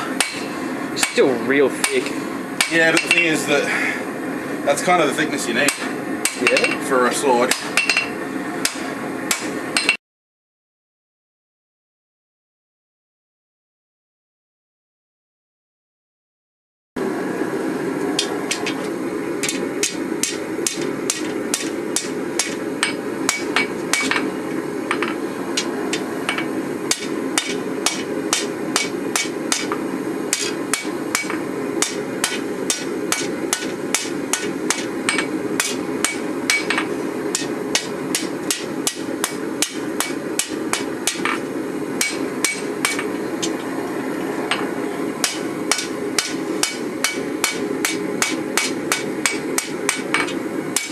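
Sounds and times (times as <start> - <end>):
hammer striking steel on anvil: 0.2 - 3.3, 5.6 - 6.8, 7.5 - 10.0, 18.2 - 24.3, 24.9 - 43.2, 44.5 - 50.9.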